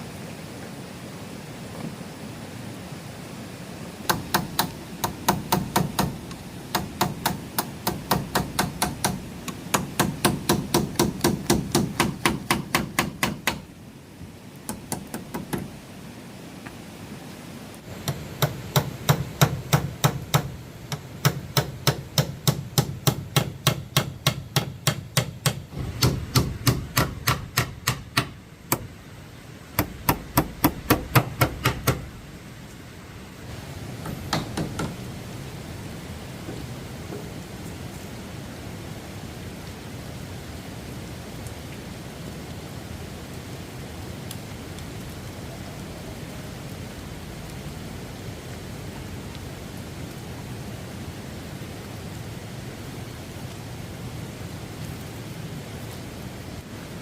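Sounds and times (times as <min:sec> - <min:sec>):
background hiss: 0:00.0 - 0:57.0
rapid hammer strikes: 0:04.1 - 0:13.7, 0:14.7 - 0:15.7, 0:17.9 - 0:28.9, 0:29.8 - 0:32.2, 0:34.0 - 0:35.0.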